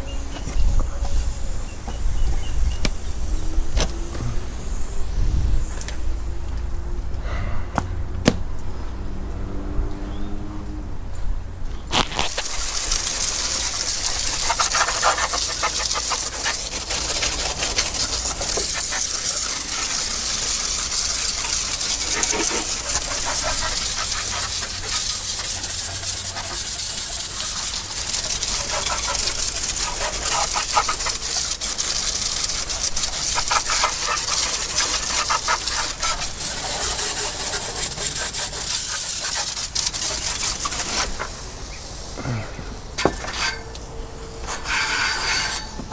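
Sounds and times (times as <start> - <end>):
water jet spraying: 11.9 - 43.6.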